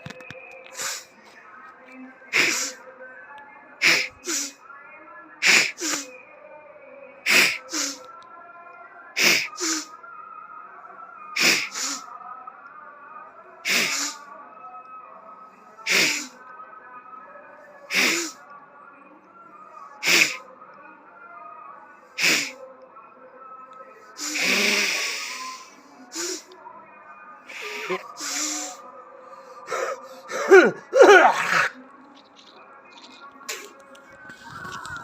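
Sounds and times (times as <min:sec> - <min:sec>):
person sneezing: 0:00.8 - 0:01.1, 0:02.3 - 0:02.8, 0:03.8 - 0:04.6, 0:05.4 - 0:06.1, 0:07.3 - 0:08.0, 0:09.2 - 0:09.9, 0:11.4 - 0:12.0, 0:13.7 - 0:14.2, 0:15.9 - 0:16.3, 0:17.9 - 0:18.4, 0:20.0 - 0:20.4, 0:22.2 - 0:22.6, 0:26.2 - 0:26.4, 0:29.7 - 0:31.7.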